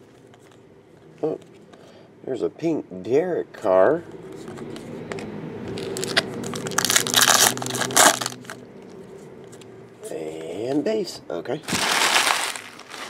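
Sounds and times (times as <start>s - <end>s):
foil wrapper tearing and crinkling: 5.8s - 8.6s, 11.7s - 13.0s.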